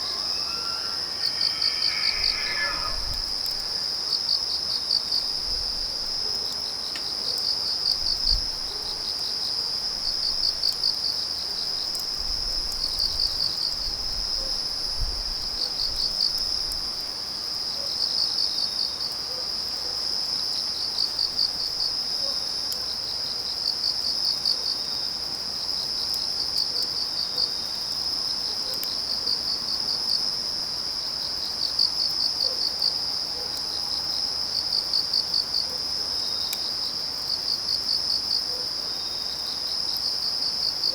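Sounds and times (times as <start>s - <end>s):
insect chirping rapid pulses: 0.0s - 4.1s
crickets trilling: 0.0s - 4.3s.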